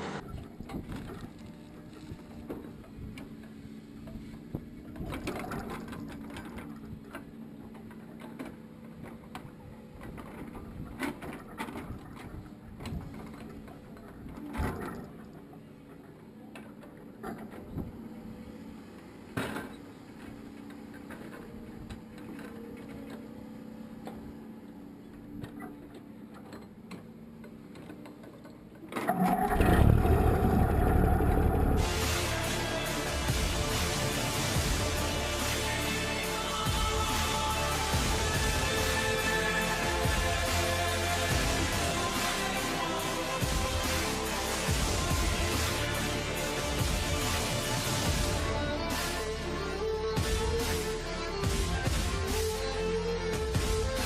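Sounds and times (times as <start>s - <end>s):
machine humming: 29.1s - 54.0s
loud music: 31.7s - 54.0s.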